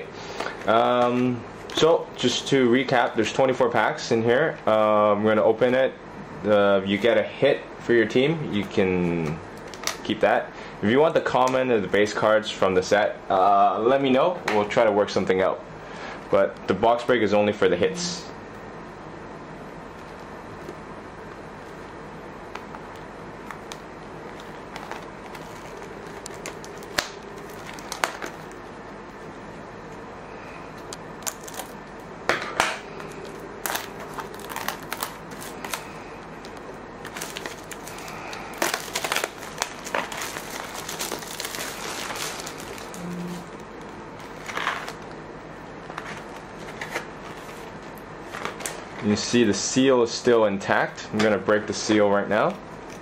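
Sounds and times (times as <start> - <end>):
plastic wrap crinkling: 22.5 - 28.6, 30.8 - 32.0, 33.0 - 45.2, 45.8 - 49.1.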